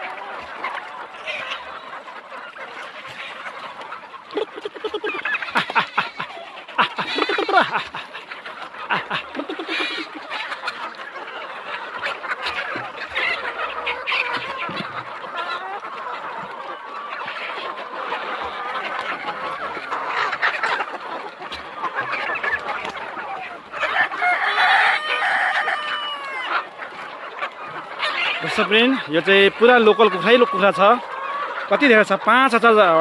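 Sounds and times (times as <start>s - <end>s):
chickens clucking: 0.0s - 33.0s
rooster crowing: 23.9s - 26.5s.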